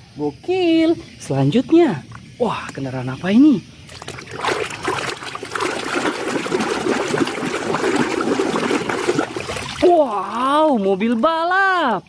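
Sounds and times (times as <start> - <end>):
water running and splashing: 3.8 - 12.0.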